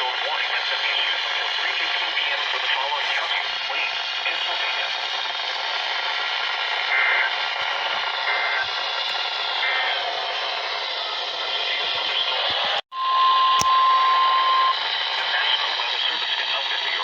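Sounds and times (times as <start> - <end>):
radio static hiss: 0.0 - 12.8, 13.6 - 17.0
steady warning alarm tone: 3.6 - 16.0.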